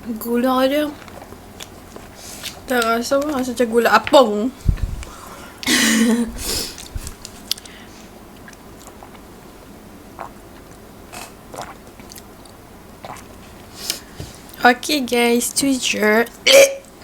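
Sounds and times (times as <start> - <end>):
person chewing and biting food: 8.4 - 9.3, 10.2 - 13.4.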